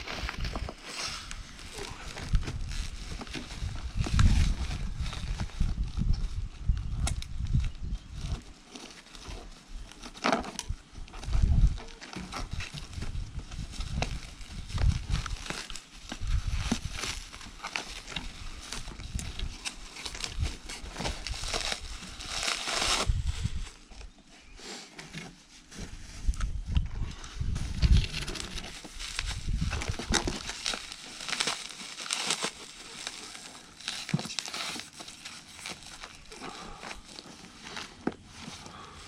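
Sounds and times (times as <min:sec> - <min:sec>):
packaging crinkling and tearing: 0:00.0 - 0:06.4, 0:08.2 - 0:23.9, 0:27.6 - 0:39.0.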